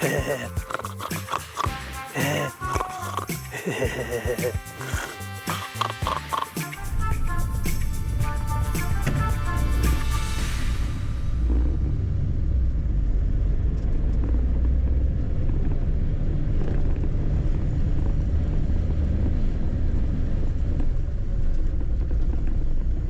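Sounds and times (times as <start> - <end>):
car engine and road rumble: 10.5 - 23.0.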